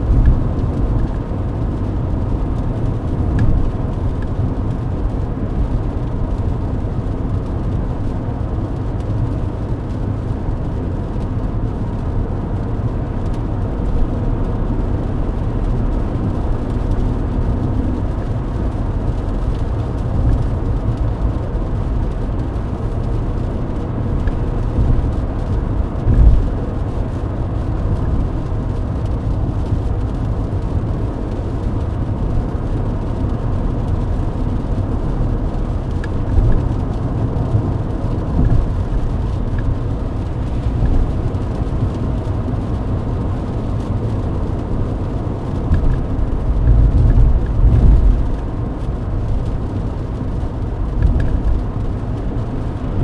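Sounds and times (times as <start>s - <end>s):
car cabin engine and tyre rumble: 0.0s - 53.0s.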